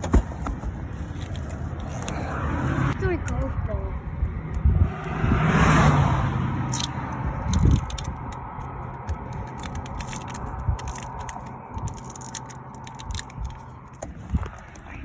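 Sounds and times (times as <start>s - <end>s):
tools scraping and clicking: 0.0s - 2.9s, 6.7s - 15.0s.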